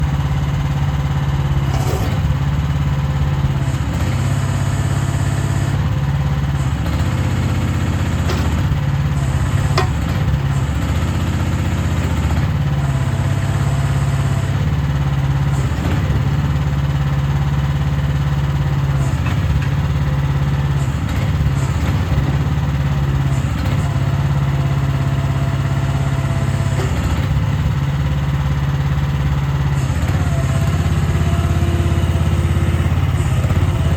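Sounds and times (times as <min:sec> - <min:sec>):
excavator engine running: 0:00.0 - 0:33.9
sharp metal clanks: 0:09.6 - 0:10.4.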